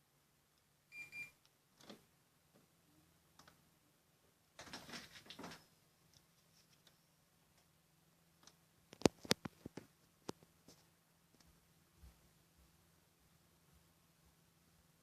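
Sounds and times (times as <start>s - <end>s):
faint low hum: 0.0s - 15.0s
air conditioner beep: 0.9s - 1.4s.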